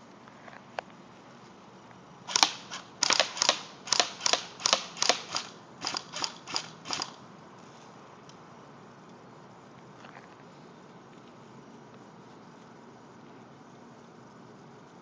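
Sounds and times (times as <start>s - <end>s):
airsoft rifle shots: 2.3s - 7.2s.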